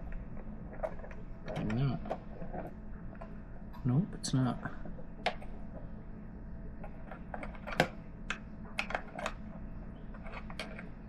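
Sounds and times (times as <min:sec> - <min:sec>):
steady low hum: 0:00.0 - 0:11.0
plastic parts clicking: 0:10.1 - 0:10.9.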